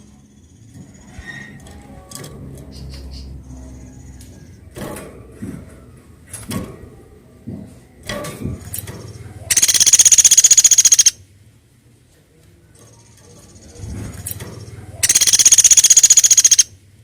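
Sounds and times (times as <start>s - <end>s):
woodpecker drumming trill: 9.0s - 11.2s, 14.6s - 16.7s.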